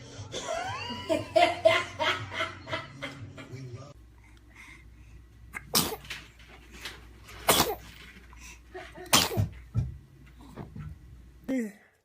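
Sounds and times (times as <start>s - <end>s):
baby sneezing: 5.6s - 6.1s, 7.4s - 7.9s, 9.1s - 9.5s.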